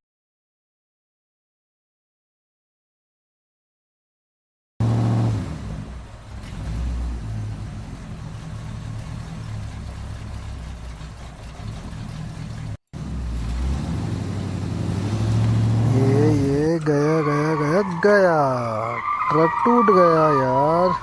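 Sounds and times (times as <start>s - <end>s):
truck engine rumbling: 4.8s - 21.0s.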